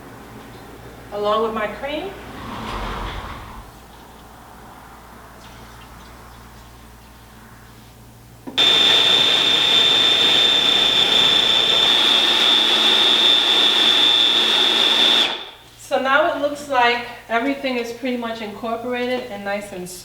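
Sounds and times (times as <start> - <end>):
food processor whining: 8.6 - 15.6.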